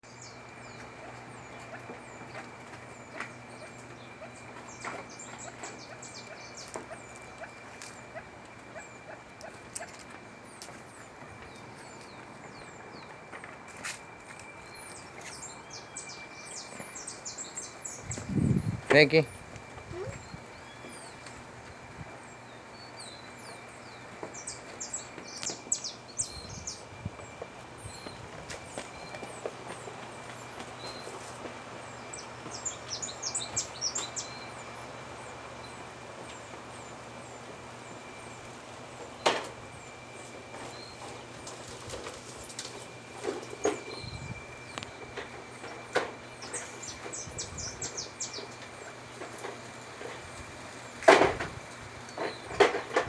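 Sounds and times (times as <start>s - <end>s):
birds chirping: 0.0s - 53.0s
faint outdoor background: 0.0s - 53.0s
steady hum: 0.1s - 53.0s
small animals chirping and squeaking: 19.7s - 21.2s.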